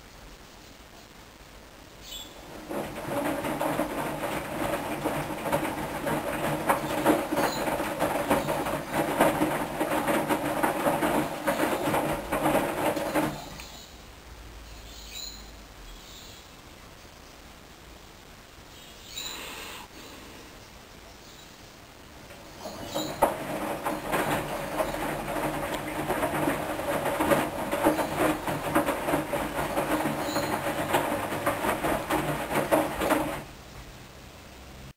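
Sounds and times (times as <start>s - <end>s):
drum knocks and clicks: 2.4s - 13.8s, 22.2s - 33.6s
washing machine motor humming: 2.4s - 13.8s, 22.1s - 34.8s
washing machine rattling: 2.4s - 13.9s, 22.1s - 34.2s.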